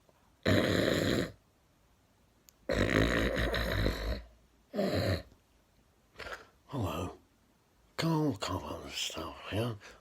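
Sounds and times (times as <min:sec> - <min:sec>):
person snoring: 0:00.4 - 0:01.4, 0:02.7 - 0:05.3.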